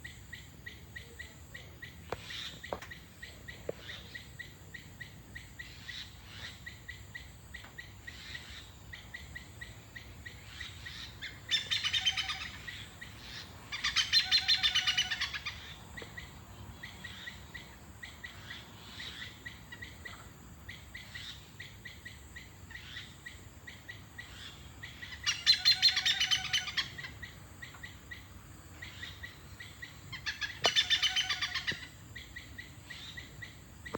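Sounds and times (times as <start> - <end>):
bird chirping: 0.0 - 33.9
bird trilling: 10.6 - 15.8, 24.3 - 27.4, 28.8 - 33.3.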